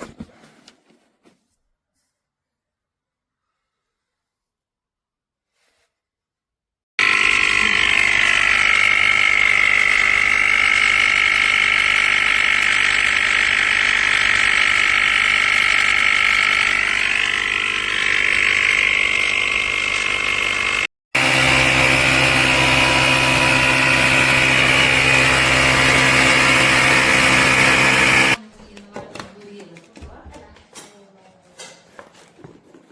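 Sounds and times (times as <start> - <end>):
air compressor running: 7.0 - 28.4.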